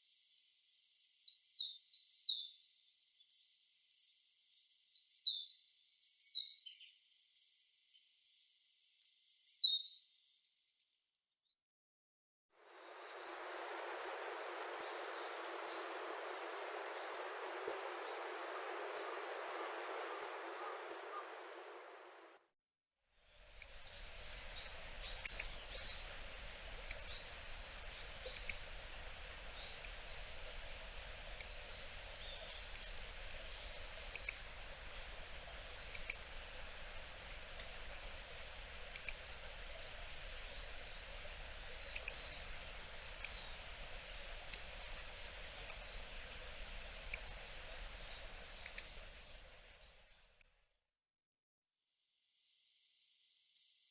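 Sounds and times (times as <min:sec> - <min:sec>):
hawfinch calling: 0:12.7 - 0:22.3, 0:23.6 - 0:49.5.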